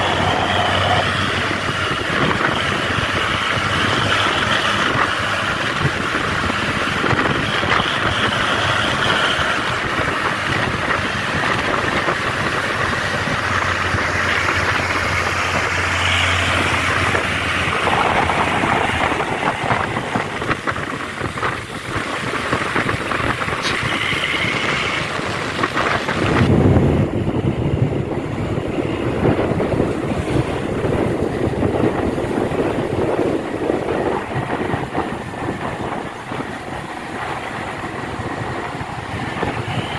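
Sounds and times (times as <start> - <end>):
heavy vehicle engines running: 0.0 - 39.9
road traffic noise: 0.0 - 39.9.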